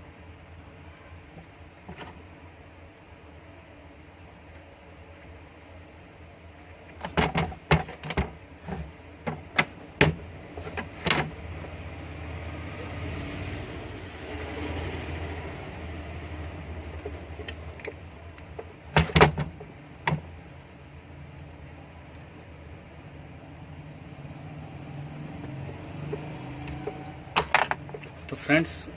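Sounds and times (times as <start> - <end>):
knocks and clicks of parts: 7.0 - 11.4, 17.0 - 20.3, 26.1 - 28.1.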